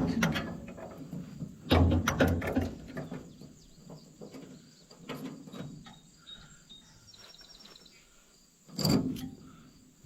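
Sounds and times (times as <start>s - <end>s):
insects chirring: 2.8s - 10.0s
bird chirping: 3.0s - 8.5s.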